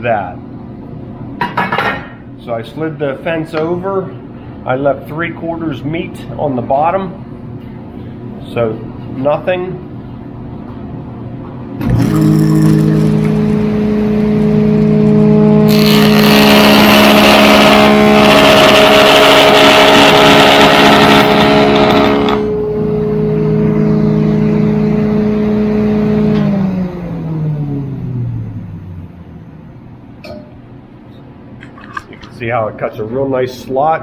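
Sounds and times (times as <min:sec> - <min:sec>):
saw cutters cutting board: 0:11.8 - 0:22.6
power saw motor humming: 0:11.8 - 0:27.8.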